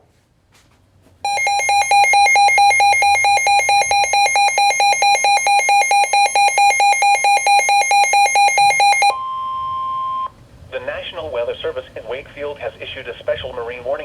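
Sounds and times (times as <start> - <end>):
two-pitch electronic alarm tone: 1.3 - 9.1.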